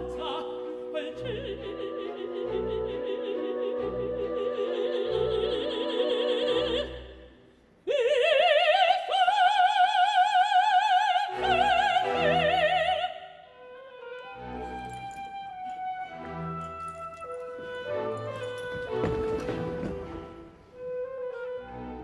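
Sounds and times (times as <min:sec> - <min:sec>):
operatic singing with vibrato: 0:00.0 - 0:22.0
orchestra playing: 0:14.1 - 0:22.0.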